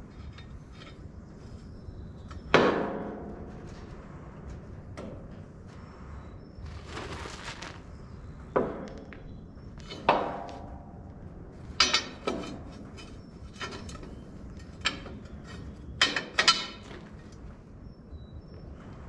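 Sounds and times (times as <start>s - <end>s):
metal tools clanking: 11.8s - 17.3s.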